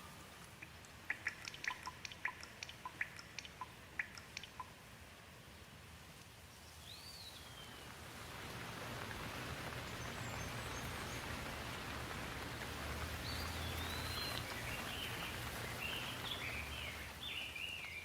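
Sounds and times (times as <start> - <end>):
bird chirping: 0.0 - 4.7, 6.6 - 8.0, 13.2 - 18.0
rain falling on leaves: 0.0 - 18.0.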